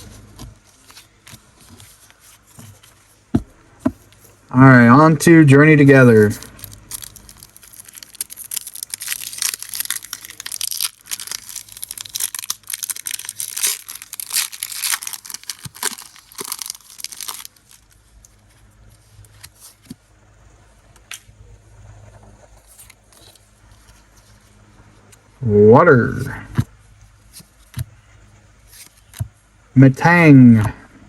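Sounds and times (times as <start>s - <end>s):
foil wrapper crinkling and tearing: 6.0s - 20.0s.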